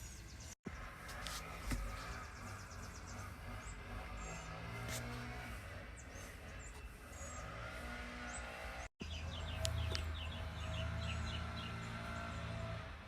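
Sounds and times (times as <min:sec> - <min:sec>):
small birds chirping: 0:00.0 - 0:12.9.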